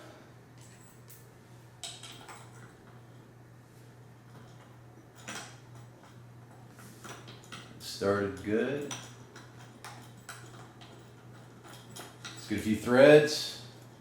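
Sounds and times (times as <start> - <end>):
steady low hum: 0.0 - 14.0
metal bolt clicks and clinks: 0.6 - 3.0, 4.3 - 12.7.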